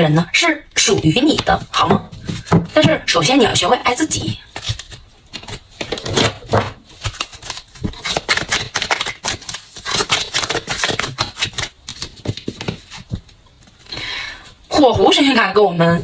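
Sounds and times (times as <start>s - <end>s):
cards being shuffled: 4.5s - 6.3s, 6.9s - 13.4s.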